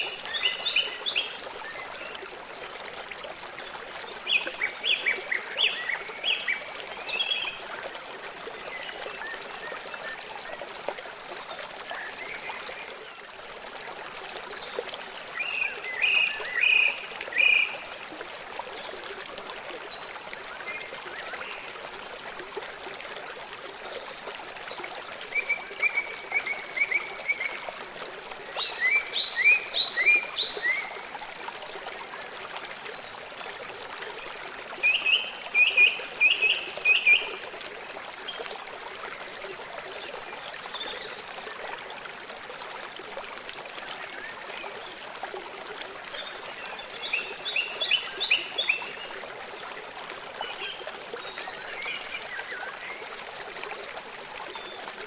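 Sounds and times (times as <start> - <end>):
stream flowing: 0.0 - 55.0.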